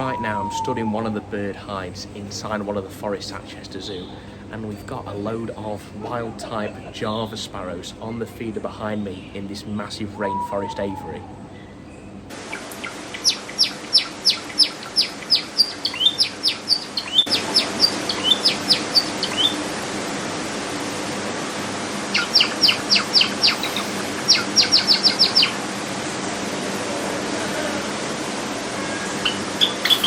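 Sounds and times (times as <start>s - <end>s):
steady background hiss: 0.0s - 30.0s
sparrows chirping: 1.8s - 20.1s, 22.0s - 25.8s, 29.1s - 30.0s.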